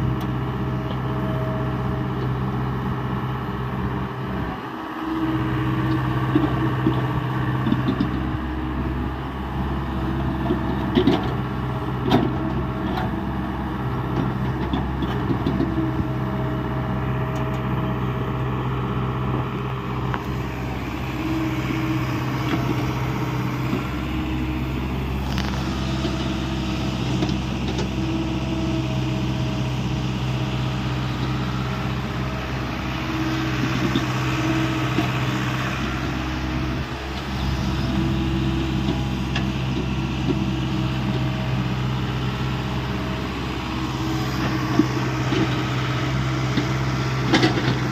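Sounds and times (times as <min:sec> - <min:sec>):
excavator diesel engine running: 0:00.0 - 0:47.9.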